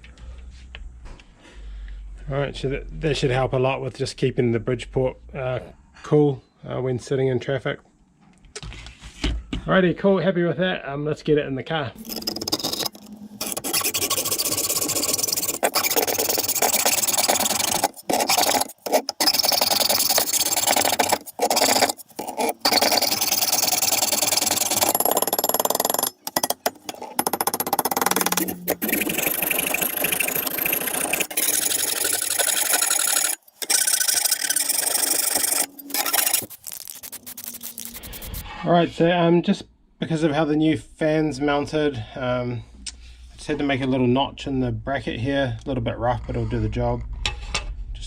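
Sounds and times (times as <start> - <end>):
metal scraping with hand tool: 12.0 - 38.7.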